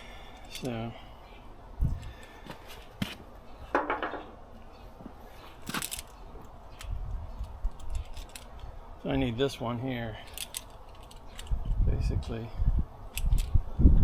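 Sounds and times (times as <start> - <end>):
hose fittings clinking: 5.6 - 8.7.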